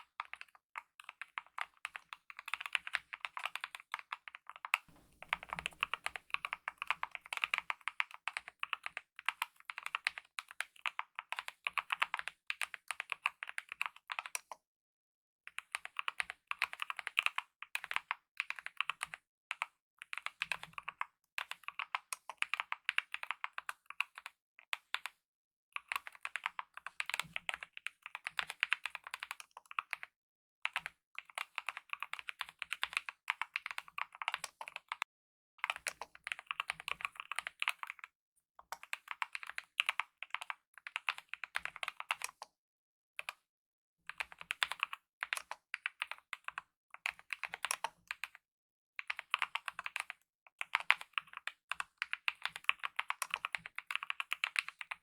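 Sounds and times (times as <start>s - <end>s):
mechanical keyboard typing: 0.3s - 4.3s, 5.2s - 14.5s, 25.9s - 30.0s, 30.7s - 35.0s, 38.8s - 42.5s, 44.1s - 48.4s, 49.0s - 55.0s.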